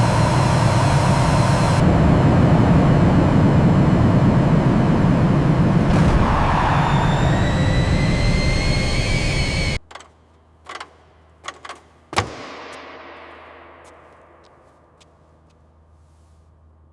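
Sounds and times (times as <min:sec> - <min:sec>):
jet engine running: 0:00.0 - 0:09.8.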